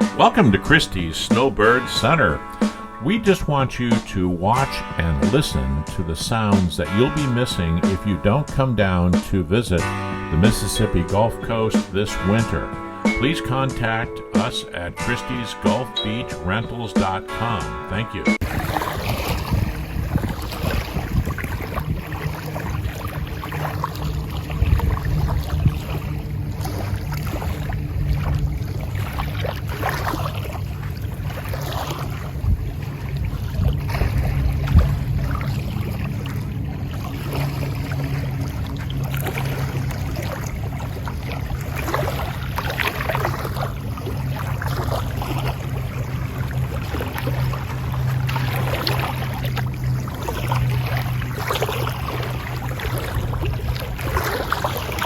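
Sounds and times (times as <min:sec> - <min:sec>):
waves washing onto beach: 0:00.0 - 0:17.7, 0:18.3 - 0:55.0
wind rumbling on microphone: 0:18.4 - 0:55.0.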